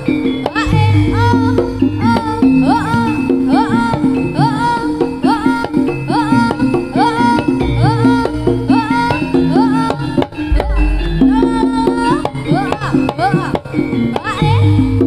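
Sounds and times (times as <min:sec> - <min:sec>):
pitched percussion and drums: 0:00.0 - 0:15.0
sliding high melody: 0:10.5 - 0:12.7.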